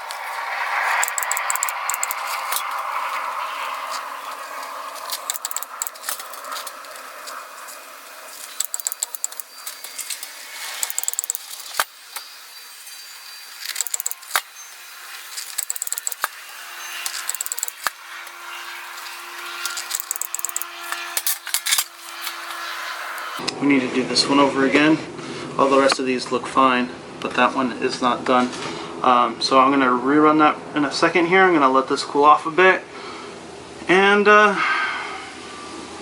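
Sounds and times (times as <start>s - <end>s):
sharp metal clicks: 0.9s - 2.8s, 5.1s - 6.8s, 8.4s - 12.3s, 13.6s - 14.6s, 15.3s - 18.4s, 19.4s - 22.4s.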